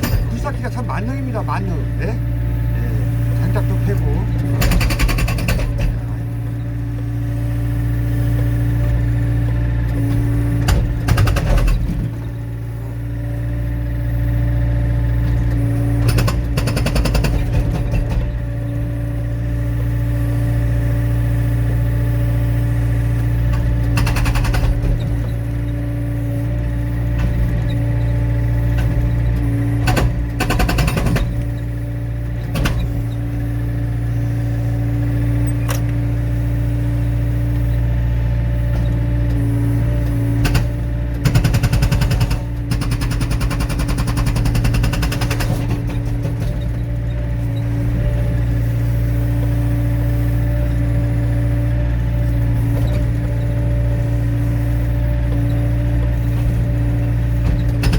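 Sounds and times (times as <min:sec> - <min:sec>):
hydraulic breaker hammering: 0:00.0 - 0:01.6, 0:03.5 - 0:07.0, 0:10.6 - 0:12.2, 0:15.7 - 0:18.5, 0:23.4 - 0:25.5, 0:28.6 - 0:31.6, 0:40.1 - 0:46.7, 0:55.4 - 0:57.9
excavator diesel engine running: 0:00.0 - 0:57.9.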